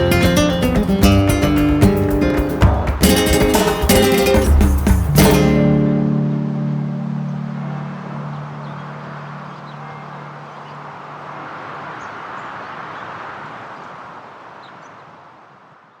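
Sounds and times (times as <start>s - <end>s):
low guitar note: 0.0s - 10.7s
steady rushing hiss: 0.0s - 13.7s
high bird chirps: 6.2s - 11.1s.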